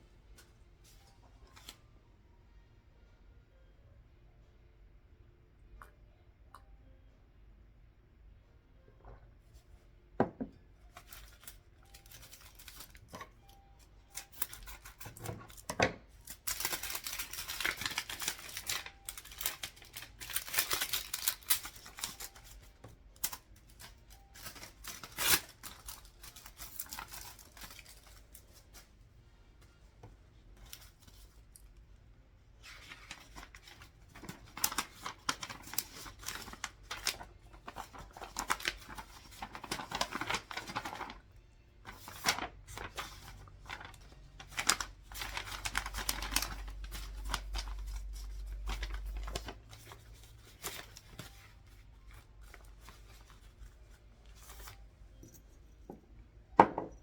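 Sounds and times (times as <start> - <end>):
paper rustling and tearing: 10.9 - 13.3, 14.1 - 28.9, 32.6 - 41.2, 41.8 - 54.8.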